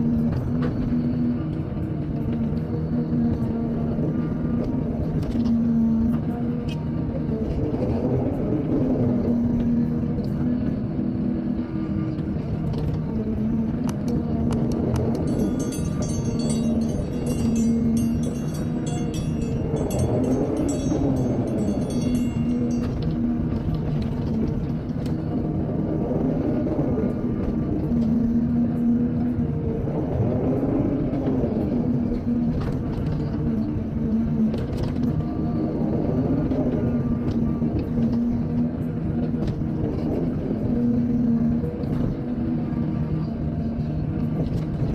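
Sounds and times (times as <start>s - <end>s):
excavator engine running: 0.0s - 35.0s
low hum: 0.0s - 44.9s.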